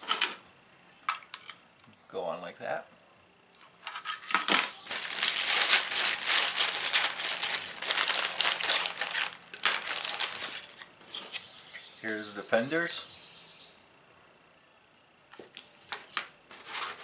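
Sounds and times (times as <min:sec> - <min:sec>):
plastic parts rustling and clicking: 0:01.1 - 0:01.6, 0:03.7 - 0:11.3.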